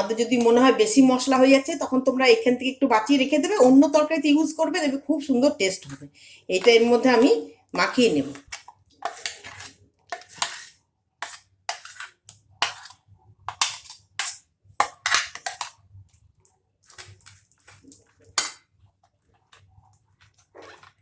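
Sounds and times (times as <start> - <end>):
spoon squelching through paste: 5.7 - 21.0
spoon scraping a bowl: 8.1 - 15.9.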